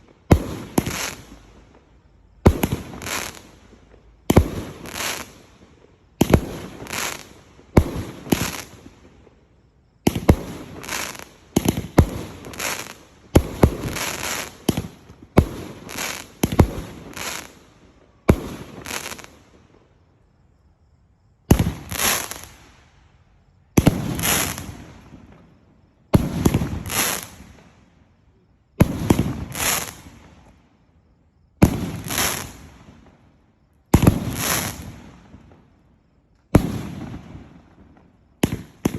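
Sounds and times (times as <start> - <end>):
fireworks shots and bursts: 0.0 - 1.8, 2.4 - 9.3, 10.0 - 17.7, 18.3 - 19.6, 21.5 - 22.8, 23.6 - 27.7, 28.8 - 30.6, 31.6 - 33.2, 33.9 - 35.8, 36.5 - 38.9
fireworks crackle: 0.0 - 5.6, 6.2 - 9.3, 10.1 - 17.6, 18.3 - 19.6, 21.5 - 22.7, 23.8 - 25.5, 26.2 - 27.7, 28.8 - 30.6, 31.6 - 33.2, 33.9 - 35.6.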